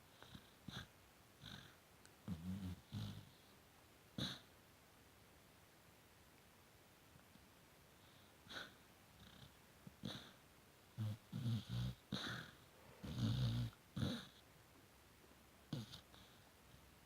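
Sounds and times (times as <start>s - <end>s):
pet snoring and snuffling: 0.0s - 3.4s, 4.2s - 4.5s, 8.5s - 14.4s, 15.7s - 16.4s.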